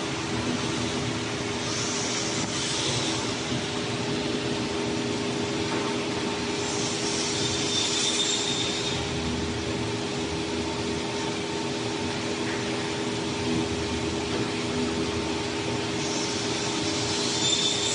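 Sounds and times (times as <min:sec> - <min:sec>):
cnc router spindle humming and hissing: 0:00.0 - 0:17.9.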